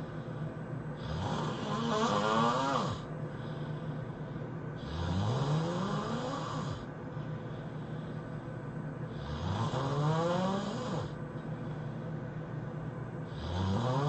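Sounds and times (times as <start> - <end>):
person snoring heavily: 1.0 - 3.1, 4.8 - 6.9, 9.1 - 11.2, 13.3 - 14.0.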